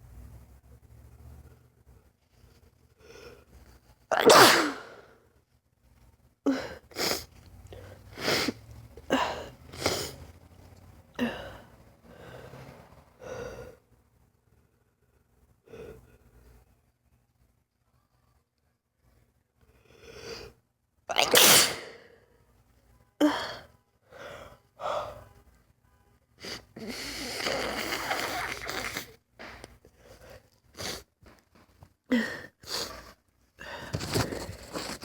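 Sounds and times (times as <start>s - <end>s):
woman sneezing: 4.1s - 5.0s, 21.1s - 22.0s.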